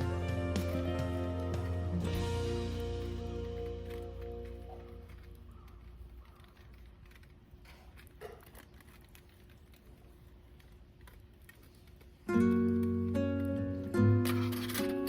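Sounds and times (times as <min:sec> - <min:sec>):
loud music with held notes: 0:00.0 - 0:03.1
campfire crackling: 0:00.0 - 0:15.0.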